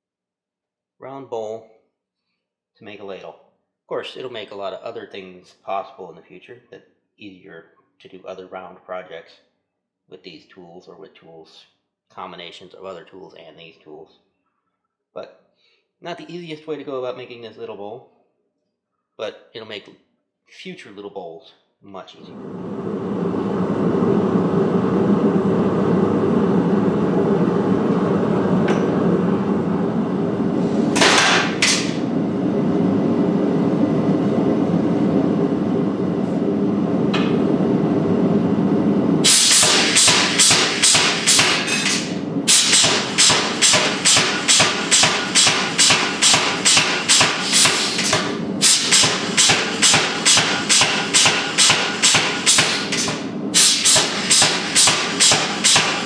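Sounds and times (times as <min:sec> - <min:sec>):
steady low rumble: 0:22.2 - 0:44.4
hammer striking steel: 0:28.7 - 0:29.0, 0:30.9 - 0:32.1, 0:39.2 - 0:56.0.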